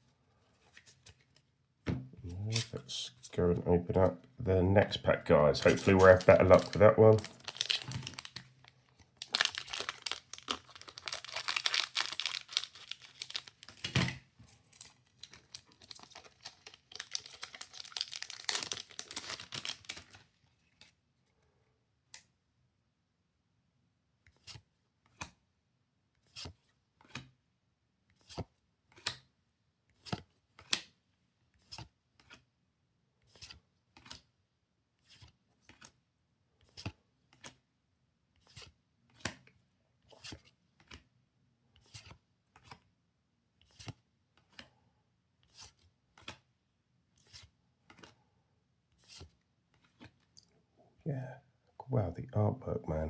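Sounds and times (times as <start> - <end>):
trading cards swishing: 2.3 - 2.8.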